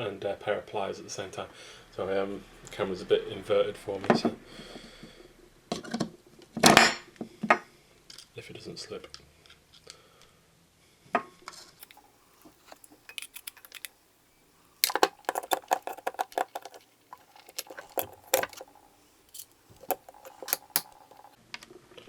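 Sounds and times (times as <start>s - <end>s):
metal clicks and clinks: 11.8s - 14.0s, 14.8s - 21.4s.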